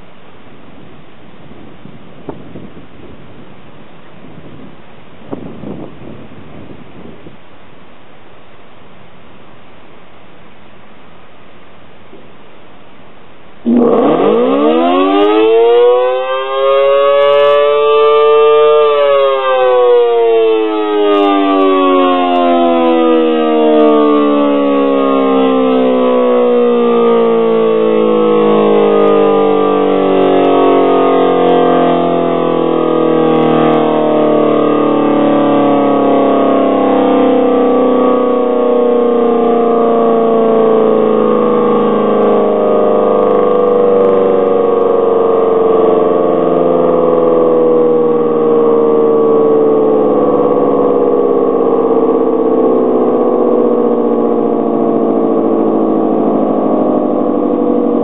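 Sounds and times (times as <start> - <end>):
siren winding down: 13.6 - 58.0.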